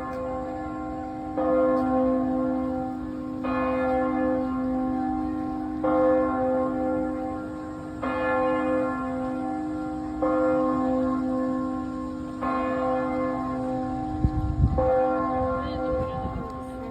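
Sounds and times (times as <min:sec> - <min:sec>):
church bell tolling: 0:00.0 - 0:16.9.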